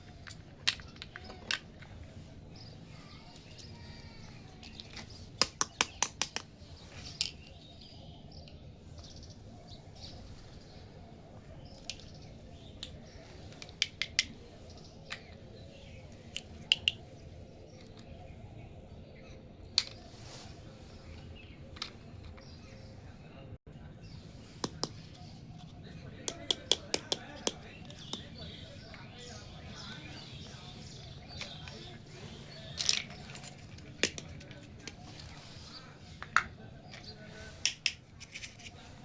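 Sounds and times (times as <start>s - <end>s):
plastic toy pieces clicking: 4.6s - 6.5s.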